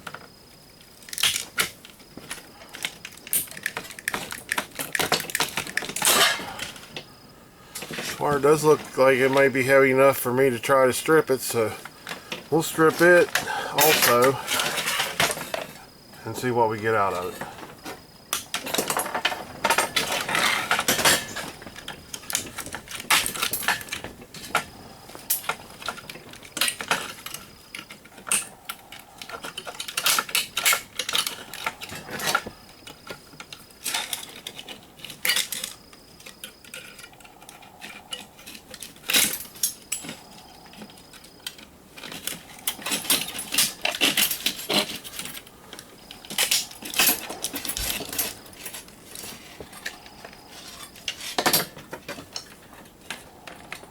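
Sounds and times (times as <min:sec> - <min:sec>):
metal parts and tools clinking: 0:02.7 - 0:06.8, 0:12.8 - 0:15.8, 0:18.3 - 0:32.5, 0:41.2 - 0:45.5, 0:46.2 - 0:53.7.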